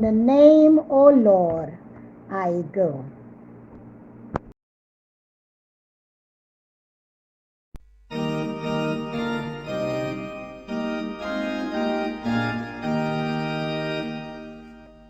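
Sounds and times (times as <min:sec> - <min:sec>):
organ playing hymn chords: 0:08.1 - 0:15.0.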